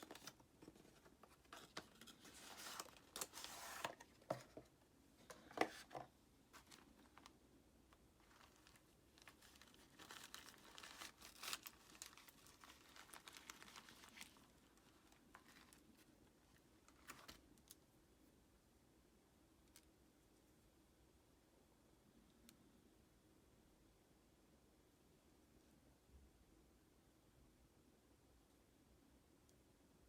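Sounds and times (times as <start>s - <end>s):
packaging crinkling and tearing: 0.0s - 0.4s, 1.0s - 4.2s, 6.6s - 7.4s, 8.2s - 16.1s, 16.8s - 17.8s.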